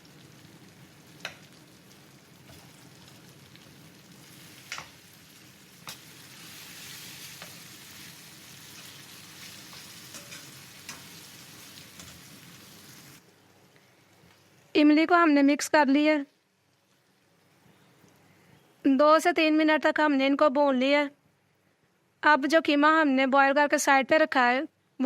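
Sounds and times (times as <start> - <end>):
food sizzling in pot: 0.0 - 13.2.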